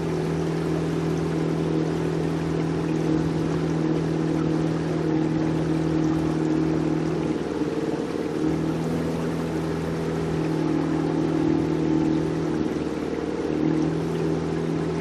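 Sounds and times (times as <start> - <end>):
motorboat engine running: 0.0 - 15.0
water wash: 0.0 - 15.0.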